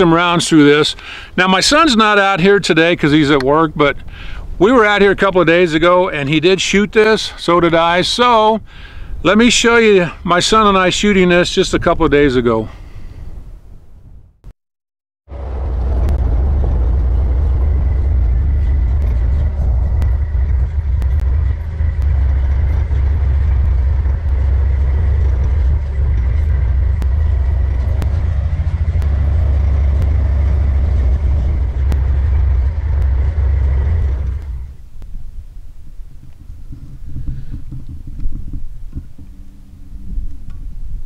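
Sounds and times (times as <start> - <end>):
vehicle driving rumble: 15.3 - 41.0
light ticks: 21.0 - 21.3.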